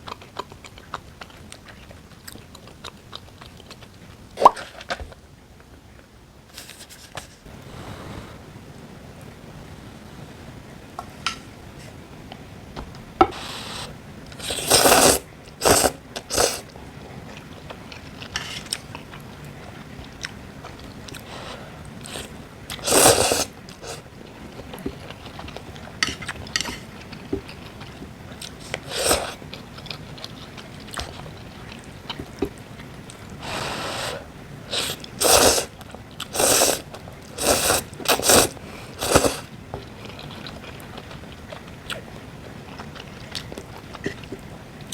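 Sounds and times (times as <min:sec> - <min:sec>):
chewing and crunching: 0:00.0 - 0:06.0, 0:15.4 - 0:22.8, 0:23.5 - 0:33.4, 0:34.8 - 0:44.9.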